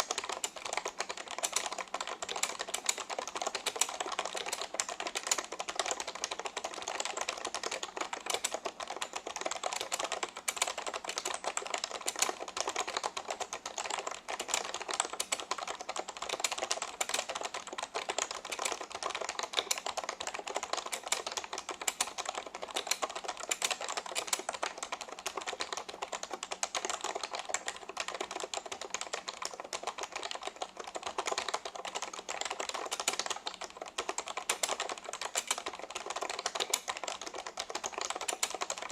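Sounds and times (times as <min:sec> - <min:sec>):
rapid typing on keyboard: 0:00.0 - 0:38.9.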